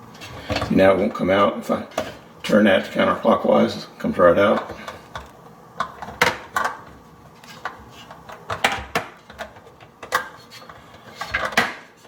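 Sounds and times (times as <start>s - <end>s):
plastic parts clicking and knocking: 4.5s - 11.9s.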